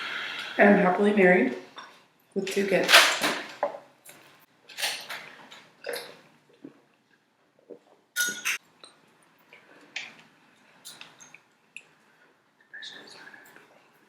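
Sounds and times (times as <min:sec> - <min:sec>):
tableware clinking: 0:08.2 - 0:08.6.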